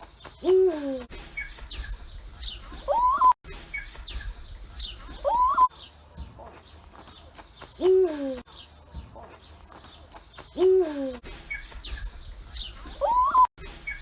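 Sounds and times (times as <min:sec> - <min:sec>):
small birds chirping faintly: 0:00.0 - 0:14.0
owl hooting: 0:00.4 - 0:05.7, 0:10.6 - 0:14.0.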